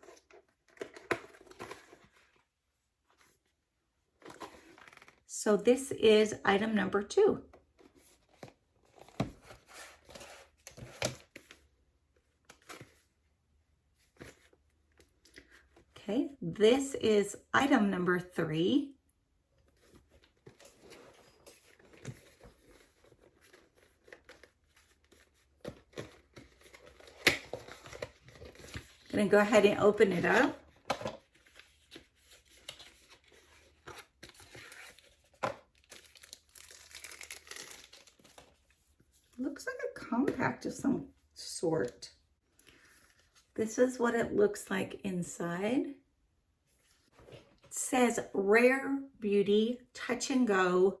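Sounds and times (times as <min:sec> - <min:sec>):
packaging rustling: 0:19.7 - 0:29.2, 0:30.3 - 0:39.0.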